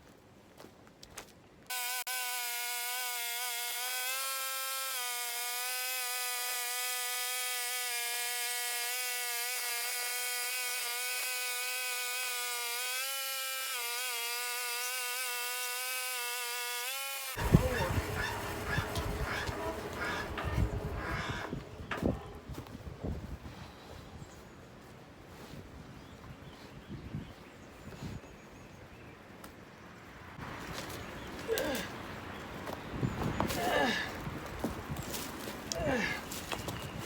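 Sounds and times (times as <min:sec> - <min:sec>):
bandsaw sawmill whining: 0:01.7 - 0:22.6.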